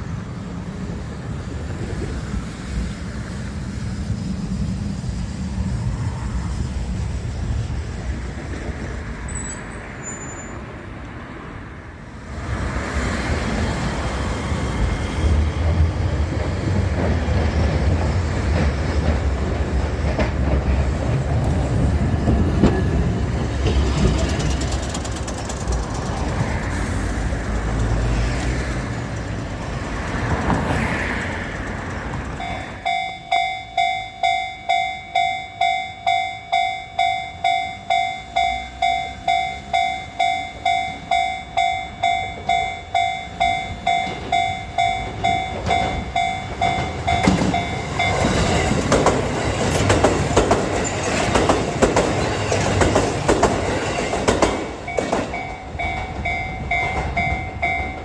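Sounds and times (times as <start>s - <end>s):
train rumbling past: 0.0s - 58.0s
level-crossing warning bell: 32.3s - 53.1s, 53.7s - 58.0s.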